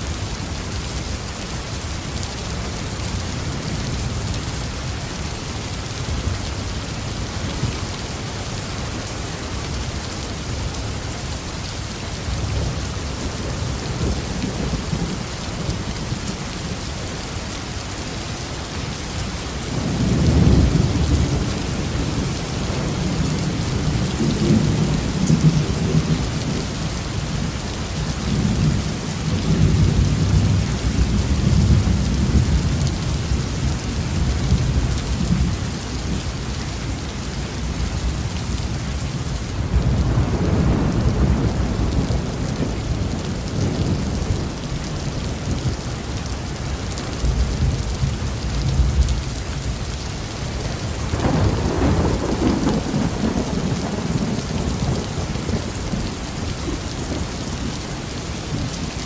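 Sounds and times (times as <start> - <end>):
heavy rain falling: 0.0 - 59.0
thunder rumbling: 37.0 - 45.8, 50.5 - 57.8.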